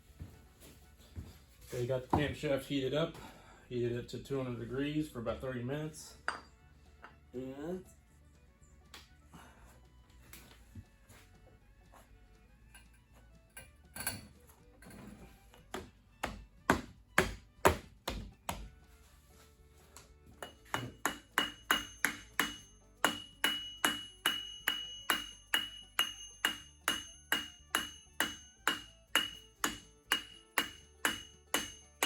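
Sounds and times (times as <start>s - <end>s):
hammer tapping on metal: 20.4s - 32.0s.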